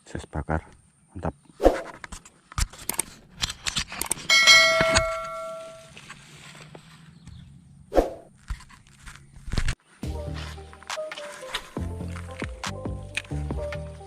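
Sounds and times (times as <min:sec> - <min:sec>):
sharp clicks: 0:02.0 - 0:04.3
loud metallic ding: 0:04.3 - 0:05.9.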